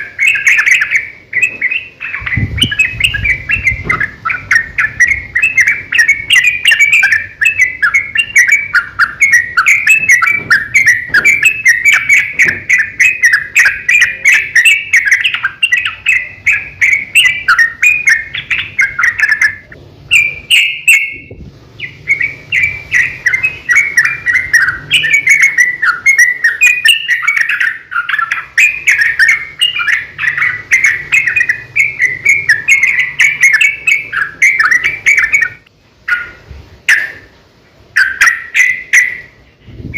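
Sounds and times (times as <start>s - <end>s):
bulbul singing bubbly chattering notes: 0.0s - 37.3s.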